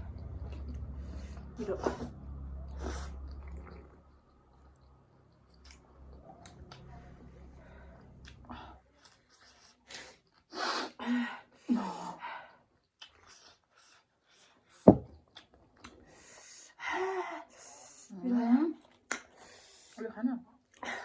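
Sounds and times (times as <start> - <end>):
slurping noodles: 1.7 - 4.5.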